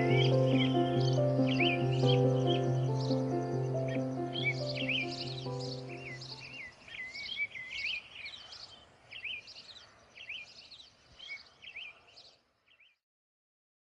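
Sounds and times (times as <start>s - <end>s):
held music chord: 0.0s - 6.8s
birds chirping and twittering: 0.0s - 13.0s.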